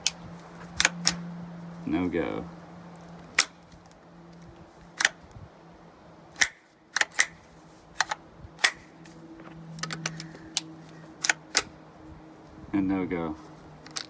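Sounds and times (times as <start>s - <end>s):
pistol bolt metallic clicks: 0.8s - 1.3s, 3.2s - 3.7s, 4.9s - 5.4s, 6.3s - 9.0s, 9.7s - 11.8s, 13.8s - 14.0s.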